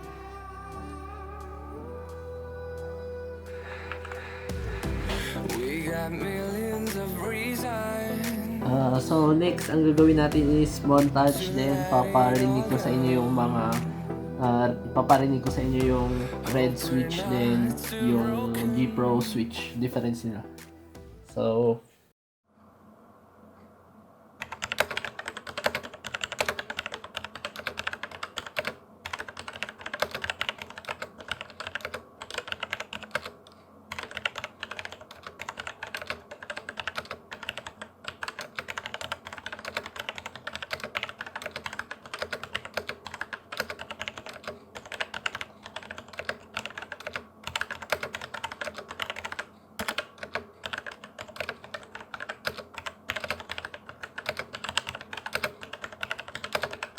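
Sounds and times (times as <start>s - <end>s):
mechanical keyboard typing: 24.4s - 56.9s.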